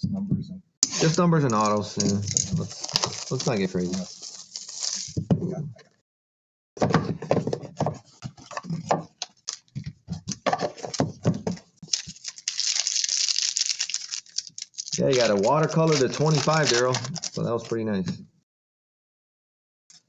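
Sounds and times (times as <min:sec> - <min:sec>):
card packs being opened: 0:00.8 - 0:05.2, 0:08.4 - 0:11.2, 0:11.8 - 0:17.8
wrappers crinkling: 0:00.8 - 0:05.2, 0:11.8 - 0:17.7.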